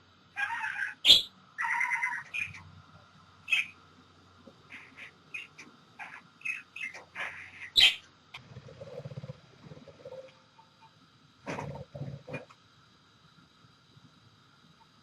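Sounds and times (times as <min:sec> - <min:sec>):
bird chirping and calling: 0:00.4 - 0:02.7, 0:03.5 - 0:03.8, 0:04.7 - 0:08.1.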